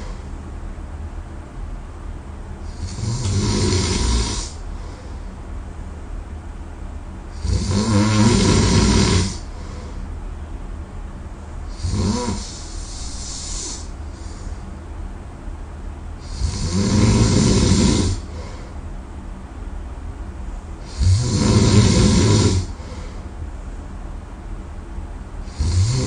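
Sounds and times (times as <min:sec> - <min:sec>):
person snoring: 0:02.7 - 0:04.6, 0:07.4 - 0:09.7, 0:11.7 - 0:14.6, 0:16.2 - 0:18.6, 0:20.8 - 0:23.1, 0:25.5 - 0:26.0.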